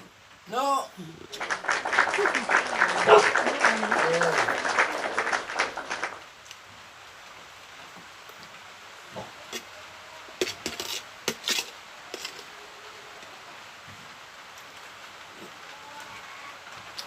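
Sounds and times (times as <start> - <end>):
noisy rustle: 1.3 - 9.8.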